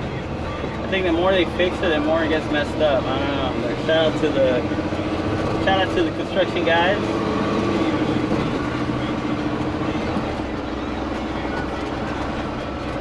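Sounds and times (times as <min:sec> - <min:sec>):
truck engine and road noise: 0:00.0 - 0:13.0.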